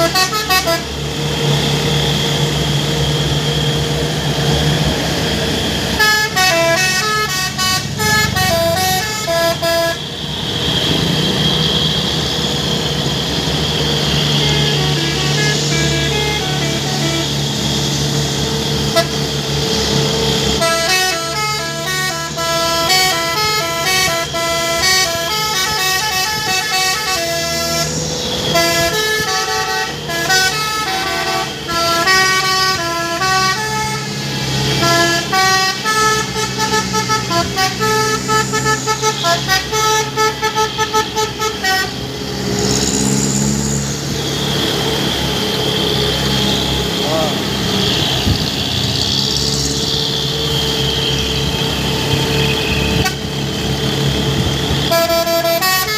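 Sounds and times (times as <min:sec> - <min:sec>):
multi-tone air horn tune: 0:00.0 - 0:01.1, 0:05.9 - 0:10.2, 0:13.6 - 0:42.8, 0:50.2 - 0:55.9
truck engine running: 0:00.0 - 0:55.9.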